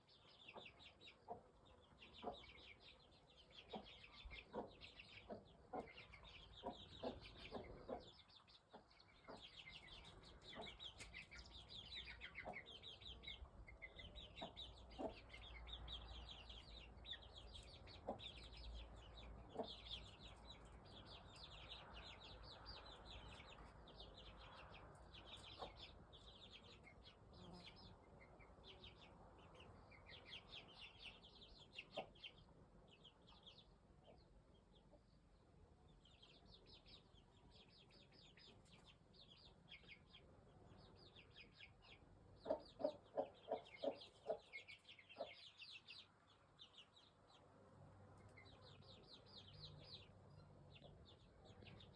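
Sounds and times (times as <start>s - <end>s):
chickens clucking: 0.2s - 32.5s, 40.8s - 46.2s.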